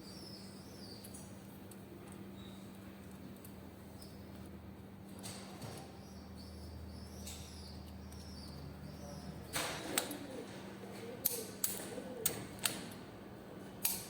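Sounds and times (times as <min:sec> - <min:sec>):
sharp metallic clicks: 0:13.8 - 0:14.0.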